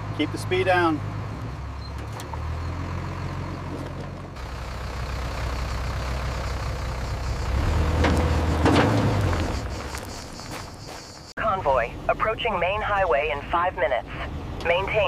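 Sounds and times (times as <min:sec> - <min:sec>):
heavy truck engine running: 0:00.0 - 0:15.0.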